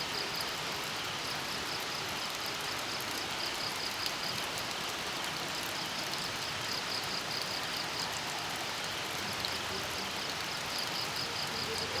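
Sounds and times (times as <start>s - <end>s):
steady rain: 0.0s - 12.0s.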